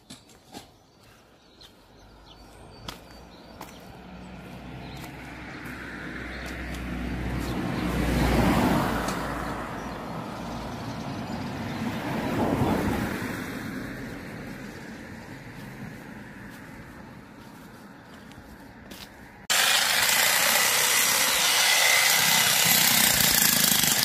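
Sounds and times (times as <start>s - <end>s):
vehicles driving past: 1.6s - 19.5s.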